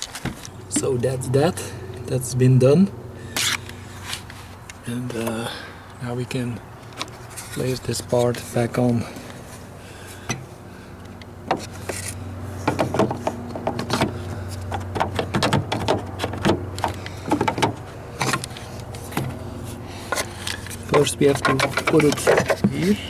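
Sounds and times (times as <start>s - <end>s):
clicks and knocks of car parts: 0.0s - 1.0s, 10.2s - 19.4s, 20.0s - 22.9s
steady low hum: 0.0s - 23.0s.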